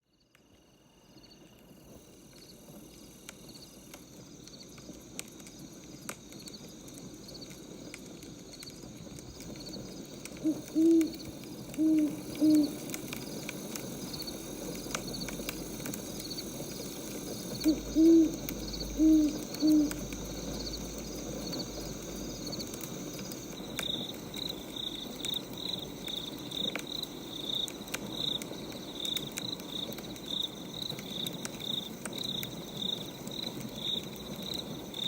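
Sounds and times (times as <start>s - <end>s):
crickets chirping: 0.1s - 35.0s
wood fire crackling: 1.4s - 35.0s
owl hooting: 10.3s - 13.0s, 17.5s - 20.6s.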